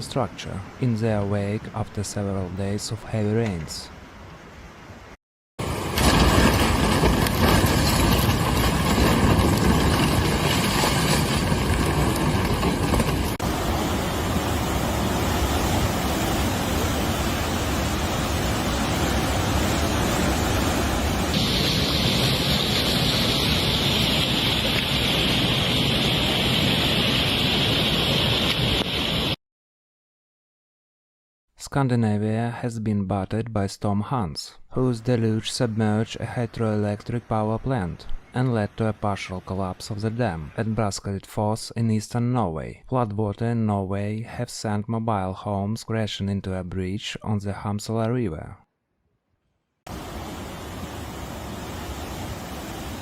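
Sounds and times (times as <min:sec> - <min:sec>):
floodwater rushing: 0:05.6 - 0:29.3, 0:49.9 - 0:53.0.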